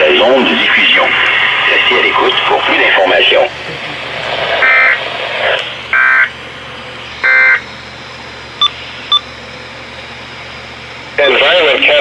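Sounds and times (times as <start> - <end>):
radio hiss: 0.0 - 9.1, 11.0 - 12.0
buzzy digital tone bursts: 0.4 - 6.3.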